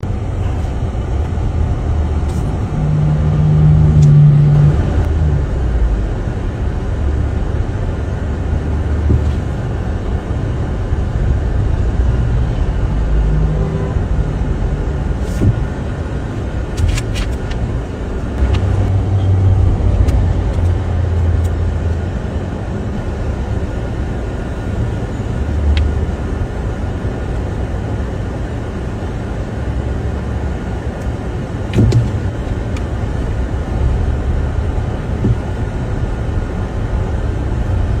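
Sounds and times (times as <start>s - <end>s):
traffic low rumble: 0.0s - 38.0s.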